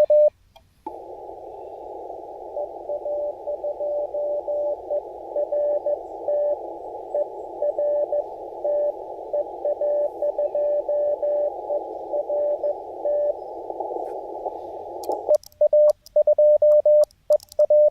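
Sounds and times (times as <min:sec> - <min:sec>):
morse code tone: 0:00.0 - 0:00.3, 0:02.6 - 0:13.4
radio hiss: 0:00.0 - 0:15.8
keyed tone with sharp clicks: 0:15.0 - 0:17.9.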